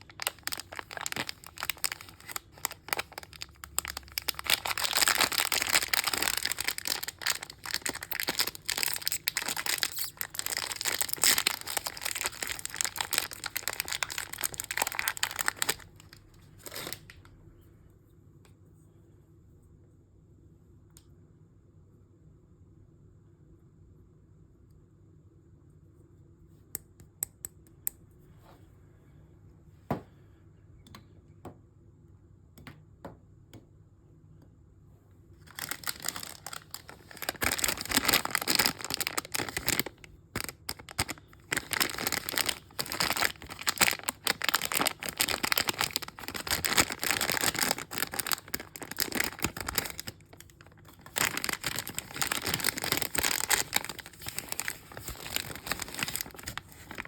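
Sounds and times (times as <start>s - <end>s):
wrapper crinkling and tearing: 0.0s - 17.2s, 35.4s - 57.0s.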